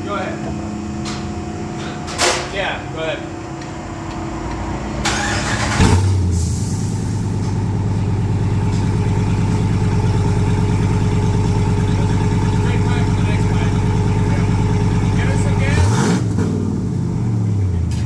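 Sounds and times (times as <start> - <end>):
engine idling: 0.0 - 18.0
engine revving: 3.7 - 18.0
engine cranking: 4.1 - 18.0.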